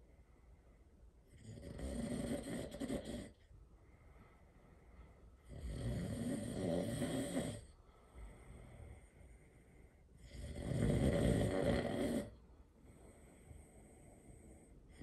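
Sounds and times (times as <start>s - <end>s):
person snoring loudly: 1.4s - 3.4s, 5.5s - 7.7s, 10.2s - 12.4s.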